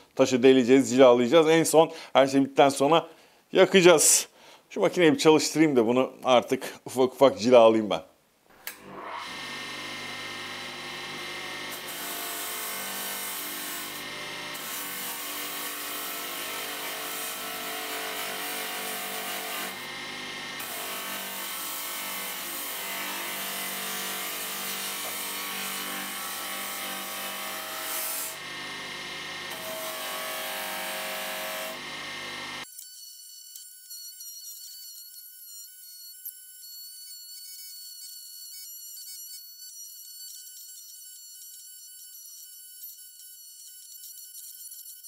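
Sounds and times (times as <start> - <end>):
polishing machine motor hum: 8.7 - 12.1, 13.0 - 14.7, 19.1 - 21.6, 24.8 - 32.6.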